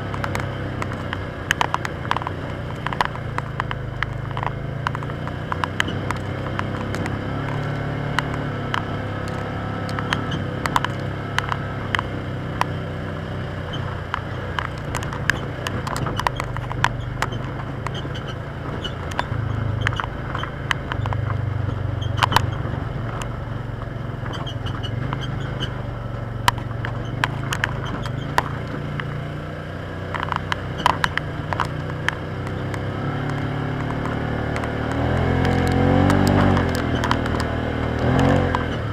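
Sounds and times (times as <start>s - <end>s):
sharp clicks and knocks: 0.0s - 29.2s, 30.0s - 38.9s
engine running at low speed: 0.0s - 38.9s.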